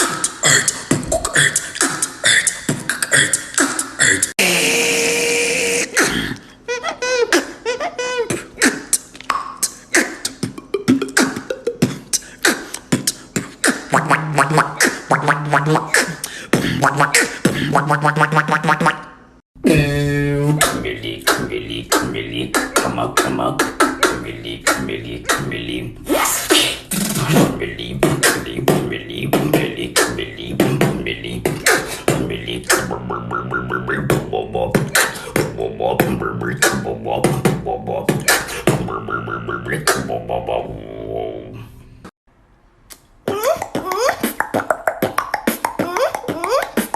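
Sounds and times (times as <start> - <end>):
beatboxing: 0.0 - 41.7, 42.9 - 46.9
hummed buzzing bass line: 27.2 - 41.3.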